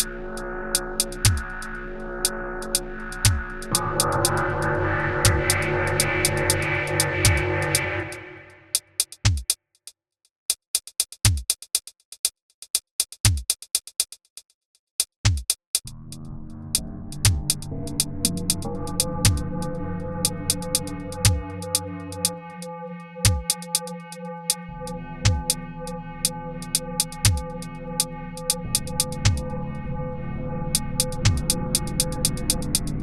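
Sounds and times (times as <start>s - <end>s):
synthesizer drone chord: 0.0s - 8.8s, 15.9s - 33.0s
fast hi-hat ticks: 0.0s - 9.6s, 10.5s - 15.9s, 16.7s - 29.7s, 30.7s - 33.0s.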